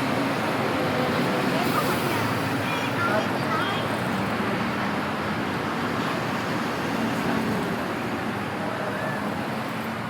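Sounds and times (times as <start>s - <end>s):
traffic noise: 0.0s - 10.0s
faint voices of passers-by: 0.9s - 5.1s.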